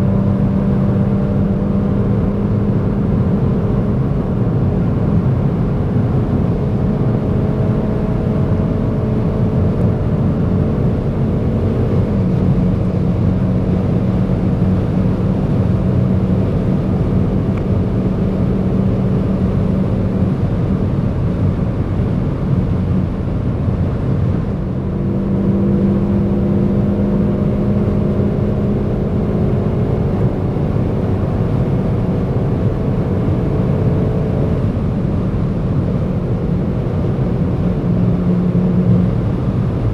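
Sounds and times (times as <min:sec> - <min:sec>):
car engine droning: 0:00.0 - 0:39.9
road and wind noise: 0:00.0 - 0:39.9.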